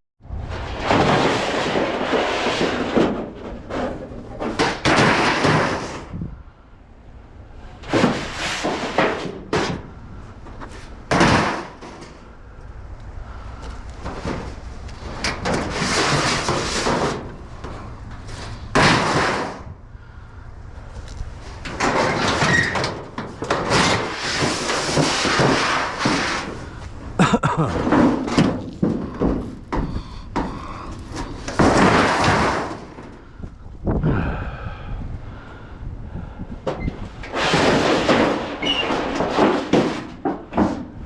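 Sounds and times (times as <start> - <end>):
scrap metal scraping: 0.3 - 6.4, 7.5 - 12.6, 13.2 - 33.6, 36.7 - 41.0
metal clanks and knocks: 0.8 - 6.2, 7.8 - 12.7, 13.6 - 19.8, 20.8 - 33.6, 36.6 - 41.0.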